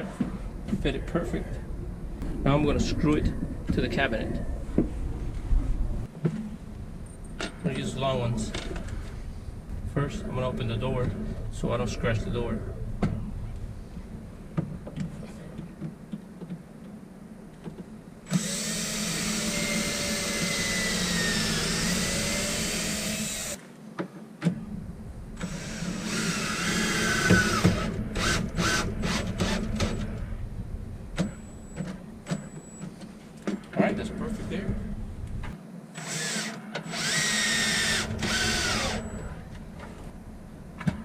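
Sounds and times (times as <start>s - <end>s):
power drill driving screws: 18.3s - 23.6s, 25.4s - 30.1s, 36.0s - 39.4s.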